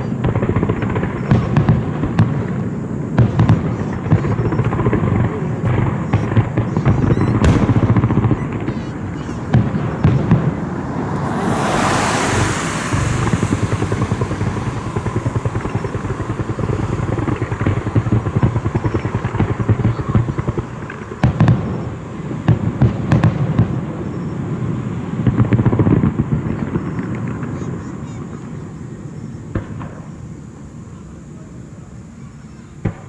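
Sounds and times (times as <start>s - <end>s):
sharp firework bangs: 0.0s - 28.8s, 29.4s - 30.2s, 32.8s - 33.0s
fireworks rumbling and crackling: 0.0s - 33.0s
hissing crackling shell burst: 9.4s - 18.9s.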